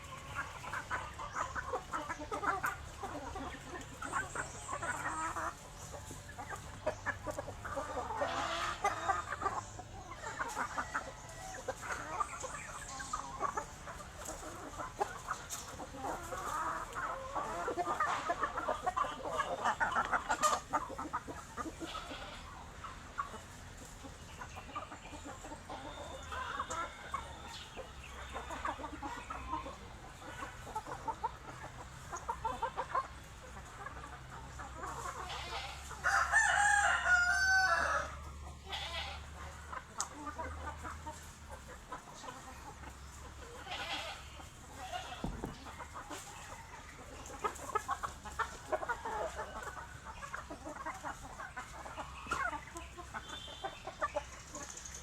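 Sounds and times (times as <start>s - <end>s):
chickens clucking: 0.0s - 55.0s
rooster crowing: 36.0s - 38.3s.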